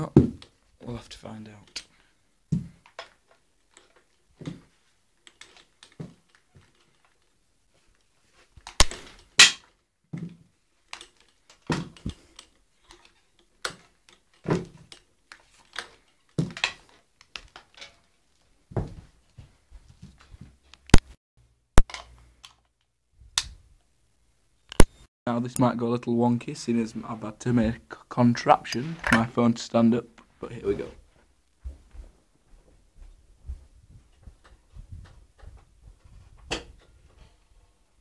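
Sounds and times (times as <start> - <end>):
objects knocking and thudding: 0.0 - 0.6, 2.5 - 7.2, 7.8 - 21.0, 33.0 - 37.6
sharp cracks: 8.7 - 9.6.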